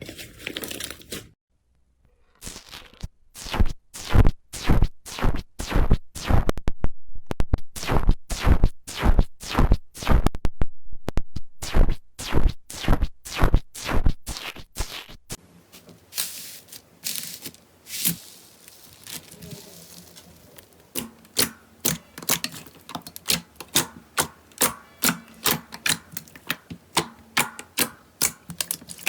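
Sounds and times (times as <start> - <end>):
soft slime crackles: 15.8 - 21.0.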